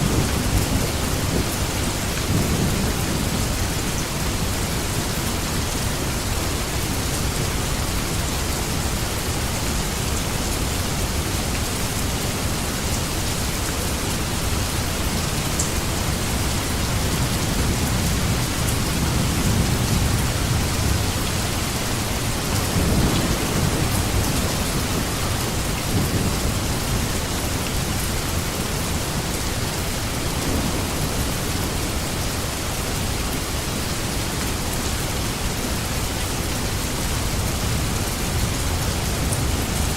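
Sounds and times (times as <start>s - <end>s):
low rumble of thunder: 0.0s - 6.0s, 12.3s - 33.1s
heavy rain hissing: 0.0s - 39.9s.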